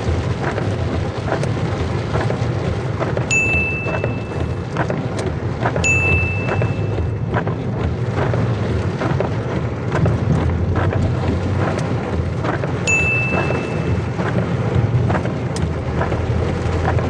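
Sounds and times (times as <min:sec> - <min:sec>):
heavy rain falling: 0:00.0 - 0:17.0
high steady tone: 0:03.3 - 0:04.6, 0:05.8 - 0:07.2, 0:12.9 - 0:14.3
sharp drop ticks: 0:03.3 - 0:04.6, 0:05.8 - 0:07.2, 0:12.9 - 0:14.4.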